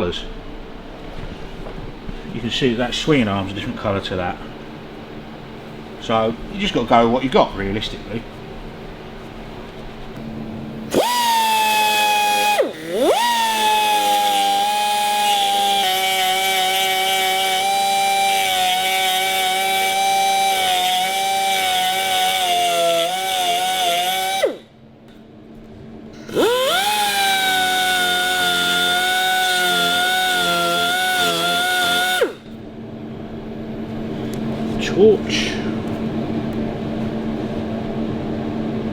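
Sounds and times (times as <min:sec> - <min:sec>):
grinder whining on metal: 0:10.8 - 0:24.7, 0:26.2 - 0:32.5.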